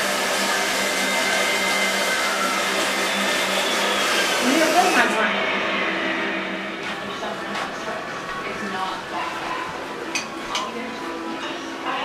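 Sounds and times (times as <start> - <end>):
small electric motor whirring: 0.0 - 5.2.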